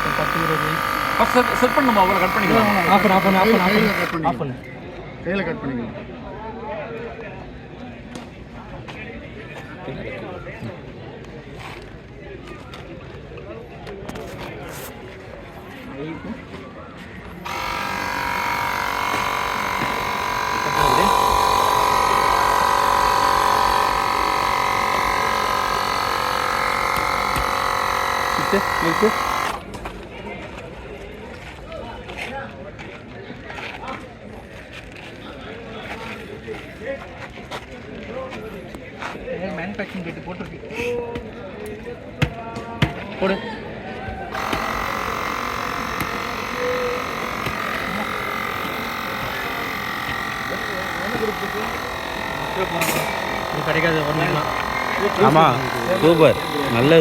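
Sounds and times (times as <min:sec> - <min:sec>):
electric tyre inflator whine: 0:00.0 - 0:04.3, 0:17.4 - 0:29.8, 0:44.3 - 0:57.0.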